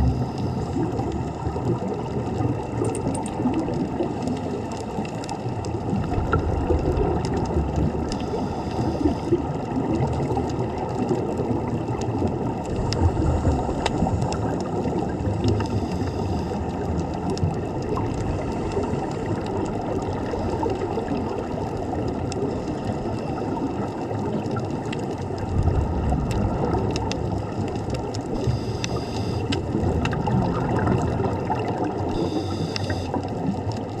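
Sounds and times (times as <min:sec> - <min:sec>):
low mechanical rumble: 0:00.0 - 0:02.0
water churning and gurgling: 0:00.0 - 0:34.0.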